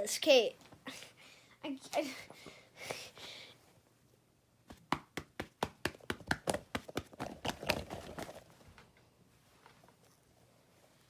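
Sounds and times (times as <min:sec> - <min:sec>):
rapid hand slaps: 0:04.7 - 0:07.3.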